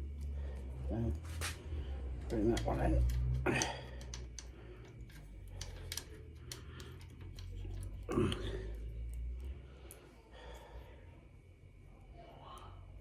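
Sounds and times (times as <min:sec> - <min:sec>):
brake parts clicking and tapping: 0:01.1 - 0:08.2.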